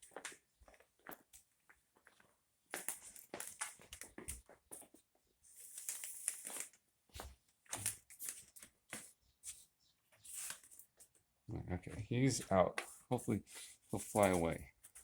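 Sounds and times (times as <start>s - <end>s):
broom sweeping floor: 9.4s - 10.7s, 12.3s - 15.0s.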